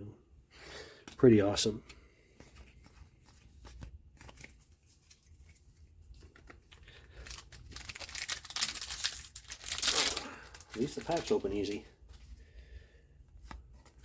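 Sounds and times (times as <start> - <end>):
wrapper crinkling and tearing: 6.2 - 11.9.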